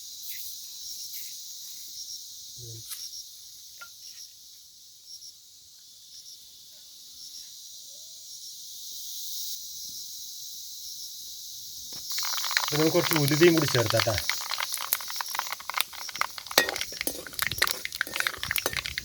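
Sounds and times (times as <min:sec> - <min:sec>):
seeds popping and crackling: 0:11.9 - 0:19.0
seeds sizzling in oil: 0:12.0 - 0:19.0.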